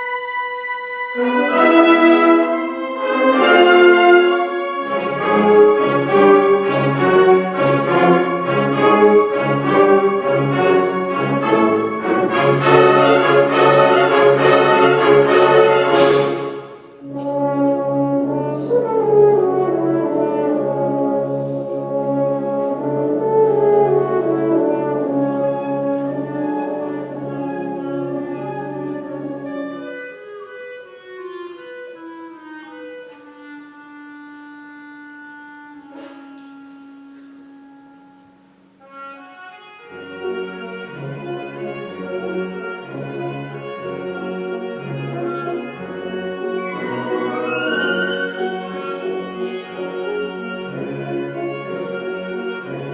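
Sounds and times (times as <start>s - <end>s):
orchestral brass music: 0.0s - 38.1s, 38.8s - 52.9s
french horns: 0.0s - 52.9s
brief high swish: 46.6s - 49.1s.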